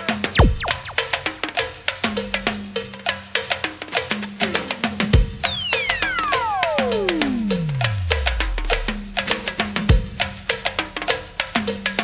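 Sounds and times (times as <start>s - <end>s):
percussion hits: 0.0s - 12.0s
hard low hit: 0.3s - 1.2s, 7.1s - 10.2s
deep sliding bass: 6.9s - 9.8s.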